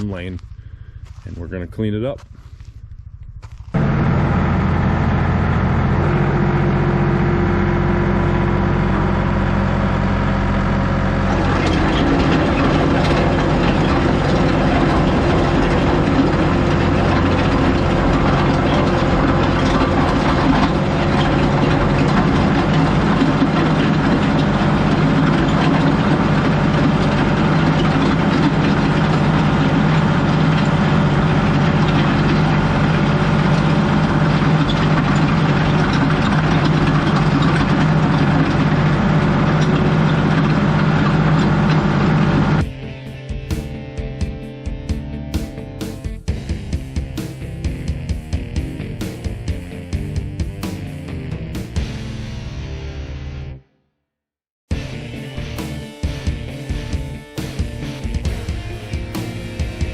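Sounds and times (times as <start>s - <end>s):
tractor diesel engine running: 0.0s - 52.5s, 54.7s - 59.9s
rattling clatter: 11.1s - 42.7s.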